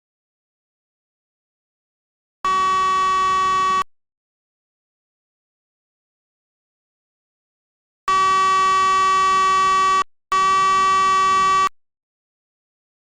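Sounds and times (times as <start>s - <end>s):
electronic alarm buzzer beeps: 2.5s - 3.9s, 8.1s - 11.8s.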